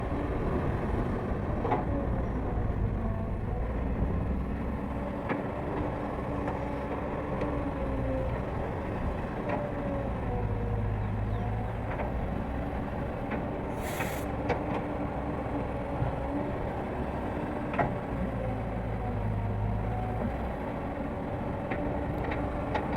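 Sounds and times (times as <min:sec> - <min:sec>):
excavator diesel engine running: 0:00.0 - 0:22.9
hiss burst: 0:13.8 - 0:14.3.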